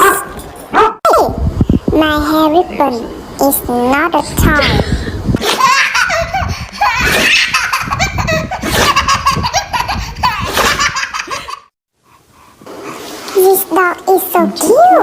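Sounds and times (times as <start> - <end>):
baby laughing: 5.4 - 11.6.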